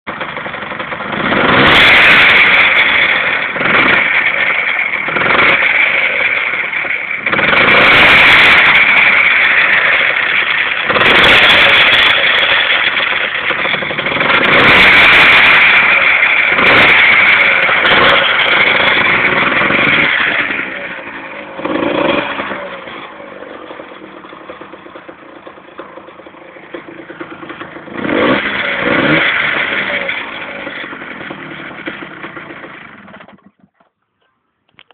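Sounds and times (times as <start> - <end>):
motorcycle engine revving: 0.1 - 33.9.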